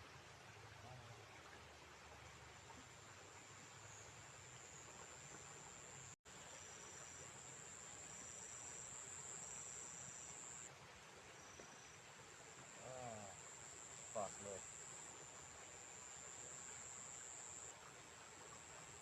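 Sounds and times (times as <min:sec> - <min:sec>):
lower insect trill: 0:05.8 - 0:10.7, 0:12.8 - 0:15.2, 0:15.9 - 0:17.7.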